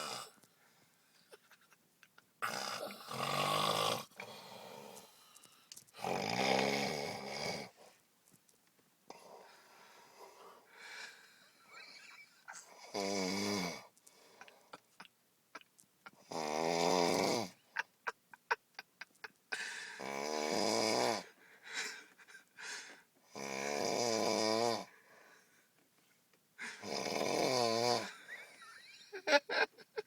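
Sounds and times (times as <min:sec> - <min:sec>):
man snoring loudly: 0:00.0 - 0:00.4, 0:02.4 - 0:05.0, 0:06.0 - 0:07.7, 0:12.7 - 0:13.9, 0:16.2 - 0:17.6, 0:19.9 - 0:21.3, 0:23.3 - 0:24.9, 0:26.7 - 0:28.3.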